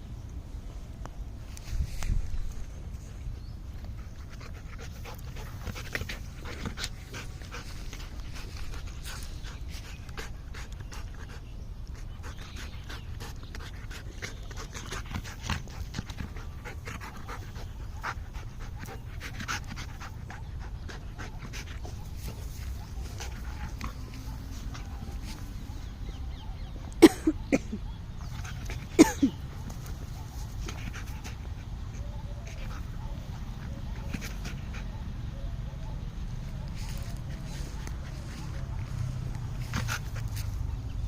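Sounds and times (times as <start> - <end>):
dog panting: 4.0 - 26.8.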